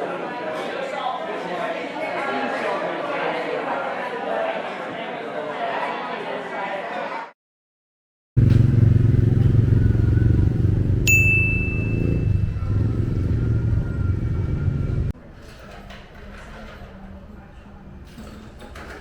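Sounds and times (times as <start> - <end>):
vehicle engine running: 8.4 - 15.1
high ringing tone: 11.1 - 13.0.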